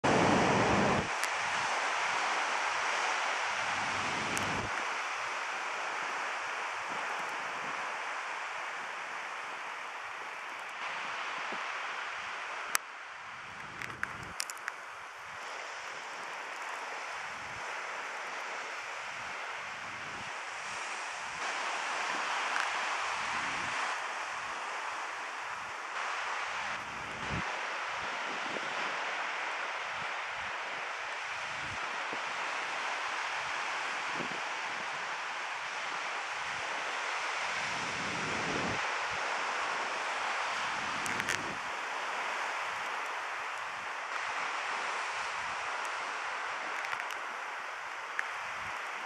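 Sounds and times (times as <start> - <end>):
wind buffeting microphone: 0.0 - 5.4, 10.8 - 32.3, 36.3 - 39.4, 40.6 - 41.9
ocean waves washing: 0.0 - 49.0.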